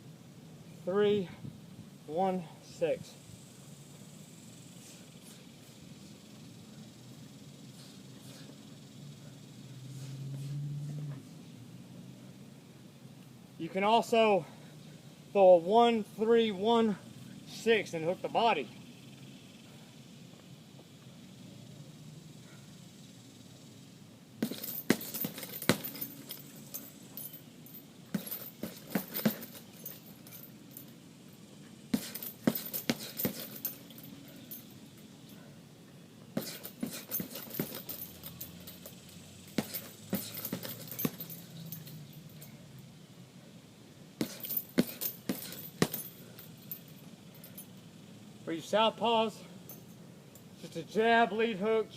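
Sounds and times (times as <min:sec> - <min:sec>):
boxing gloves punching bag: 0:24.4 - 0:26.5, 0:28.1 - 0:30.1, 0:31.9 - 0:34.0, 0:36.4 - 0:38.8, 0:39.5 - 0:41.9, 0:44.2 - 0:46.2
light metallic jingle: 0:24.4 - 0:35.6, 0:36.4 - 0:42.9, 0:44.2 - 0:48.0, 0:49.4 - 0:51.0.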